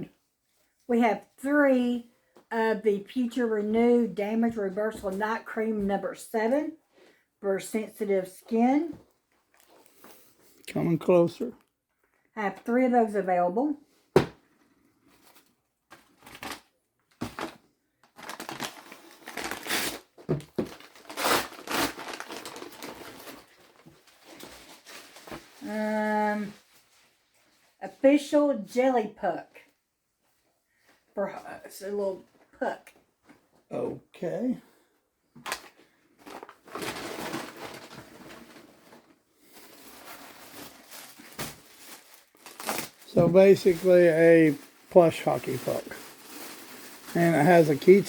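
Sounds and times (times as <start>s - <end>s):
plastic packaging crinkling: 15.2s - 25.7s, 35.5s - 48.0s.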